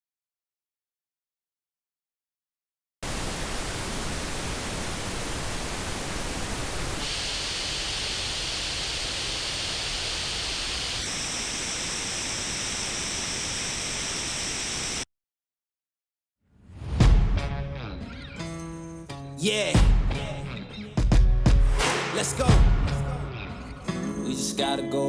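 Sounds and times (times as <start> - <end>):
pink noise test signal: 3.0 - 15.1.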